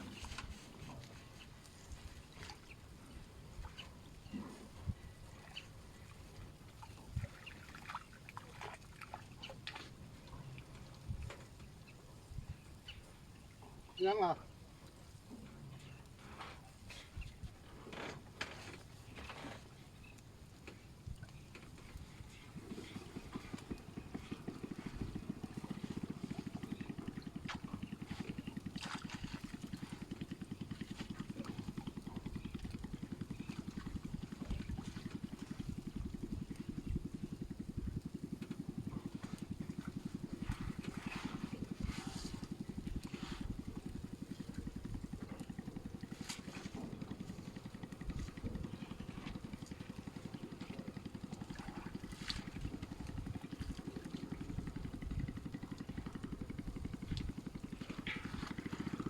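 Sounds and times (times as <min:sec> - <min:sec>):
small engine chugging: 0:21.7 - 0:59.0.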